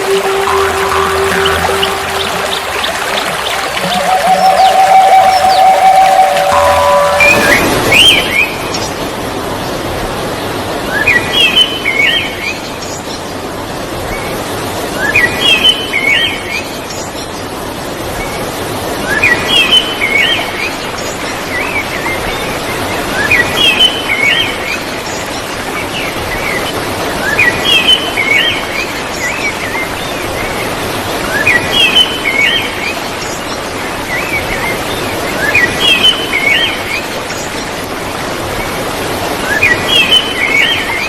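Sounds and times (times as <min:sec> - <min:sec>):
waterfall rushing: 0:00.0 - 0:10.9.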